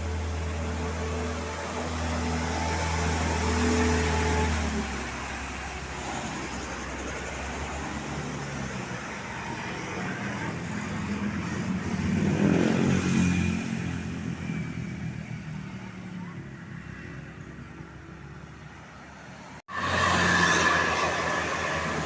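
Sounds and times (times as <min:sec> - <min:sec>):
traffic rushing past: 0:00.0 - 0:22.0
heavy vehicle engine passing: 0:18.4 - 0:22.0.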